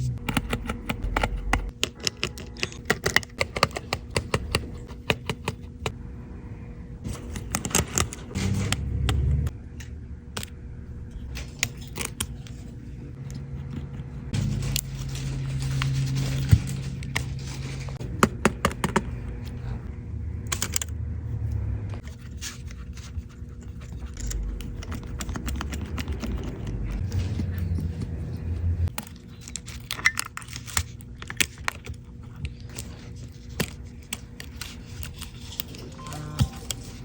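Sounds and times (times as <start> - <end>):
low hum: 0.0 - 2.8, 5.8 - 22.2, 33.8 - 37.0.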